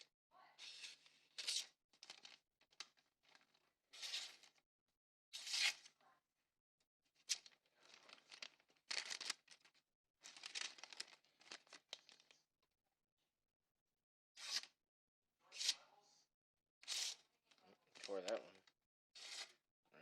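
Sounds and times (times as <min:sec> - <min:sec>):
axe slicing paper: 0:05.4 - 0:05.8, 0:16.8 - 0:17.2, 0:19.2 - 0:19.6.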